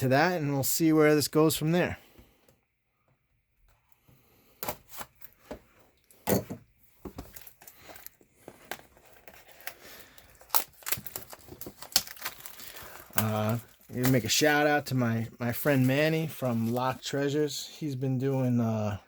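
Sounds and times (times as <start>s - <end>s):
packaging being torn: 9.0s - 14.4s.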